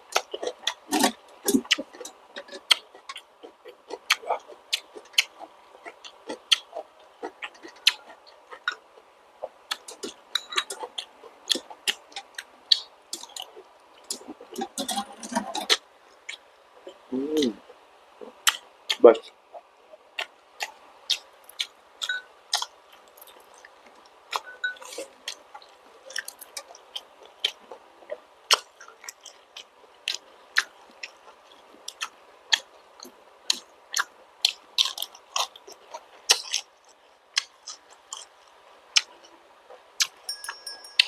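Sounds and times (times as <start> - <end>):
wet chewing mouth clicks: 0.1 - 8.8, 18.5 - 36.7.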